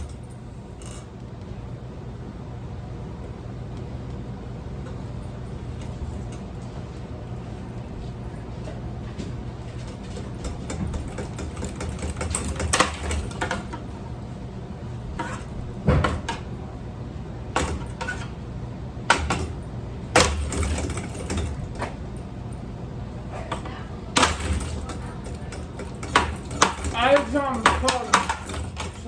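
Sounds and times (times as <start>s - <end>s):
steady low hum: 0.0s - 29.0s
knocks and cracks of breaking fan: 9.8s - 14.0s, 15.2s - 16.6s, 17.5s - 18.4s, 19.0s - 22.1s, 23.4s - 29.0s.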